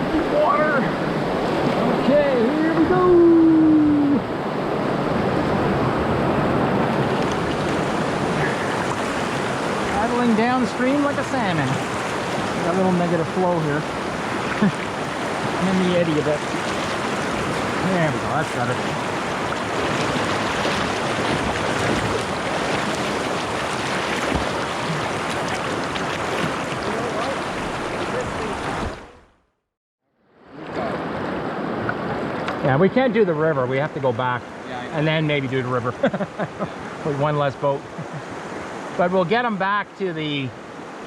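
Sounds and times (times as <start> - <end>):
rushing river rapids: 0.0 - 29.2.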